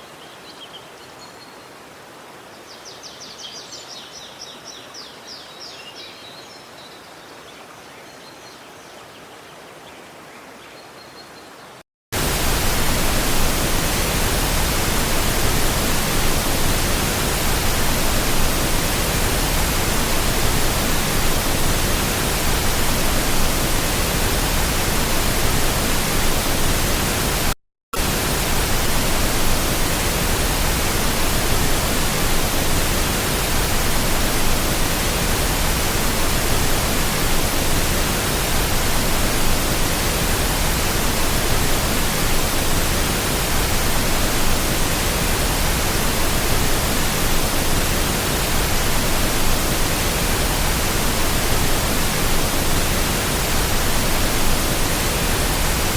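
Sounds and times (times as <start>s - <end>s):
rushing water: 12.2s - 55.9s.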